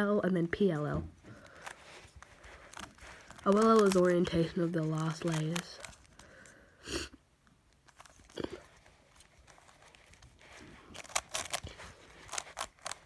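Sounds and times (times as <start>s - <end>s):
puzzle cube layers clicking: 11.0s - 13.0s.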